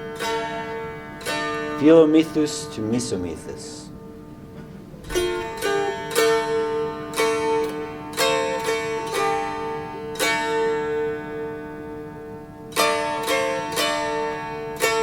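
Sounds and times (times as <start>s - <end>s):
plucked string melody: 0.0s - 15.0s
drone strings: 4.9s - 9.5s.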